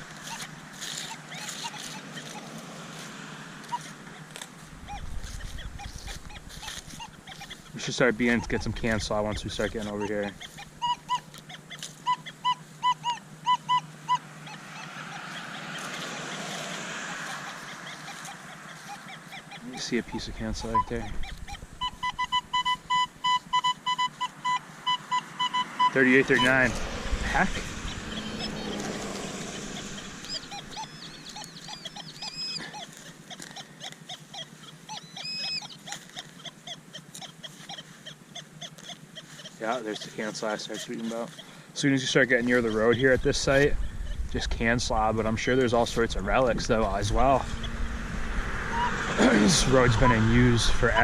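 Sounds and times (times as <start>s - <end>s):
metal detector beeps: 4.9s - 15.8s, 17.2s - 26.8s, 30.2s - 43.2s, 49.7s - 51.0s
dog barking: 4.9s - 22.4s, 28.1s - 40.1s.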